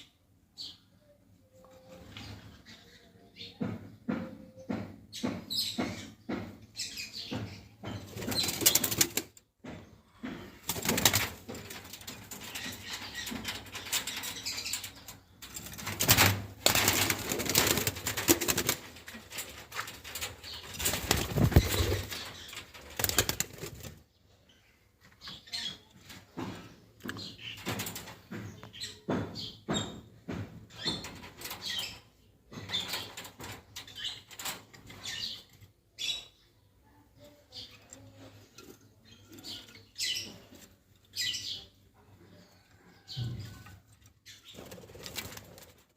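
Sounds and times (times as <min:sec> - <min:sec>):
wings flapping: 0:10.6 - 0:14.4, 0:15.5 - 0:24.0, 0:44.6 - 0:45.9
lovebirds chirping: 0:24.0 - 0:45.6.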